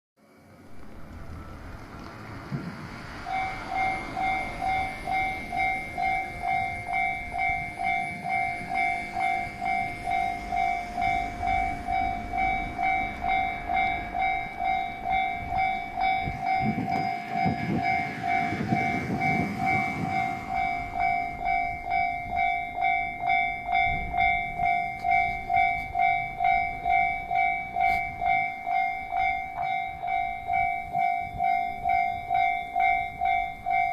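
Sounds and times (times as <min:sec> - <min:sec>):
crossing warning bell pulsing: 0:00.2 - 0:33.9
diesel train engine and wheels: 0:00.2 - 0:33.9.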